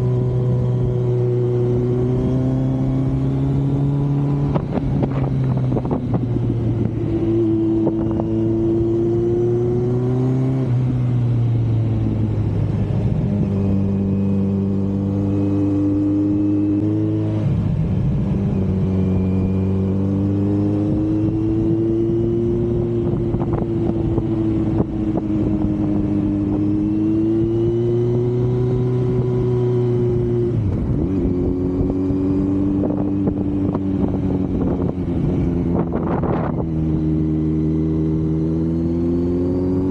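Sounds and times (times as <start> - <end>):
motorcycle engine and exhaust: 0.0 - 39.9
wind buffeting microphone: 2.3 - 11.1, 20.6 - 38.7.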